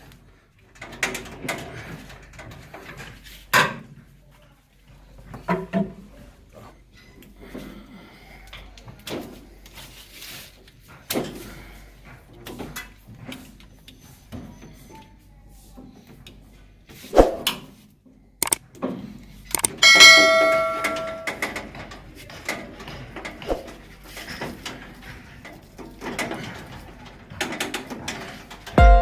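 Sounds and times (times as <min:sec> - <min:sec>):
ringing metallic clang: 0:19.8 - 0:21.5.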